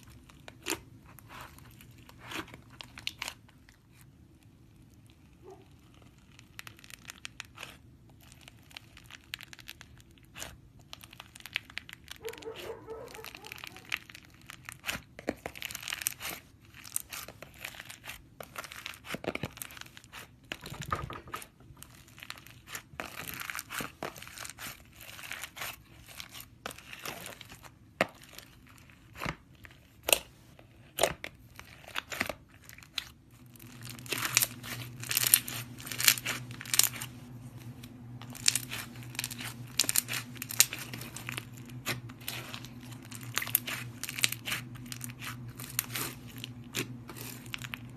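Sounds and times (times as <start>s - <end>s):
slime crackling and popping: 0.0s - 47.9s
slime crinkling: 0.0s - 47.9s.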